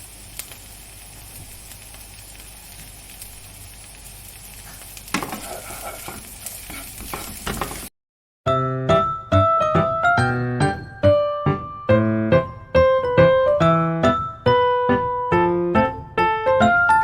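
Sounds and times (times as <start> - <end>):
food sizzling in hot oil: 0.0 - 7.9
spoon clinking and scraping pan: 5.1 - 7.9.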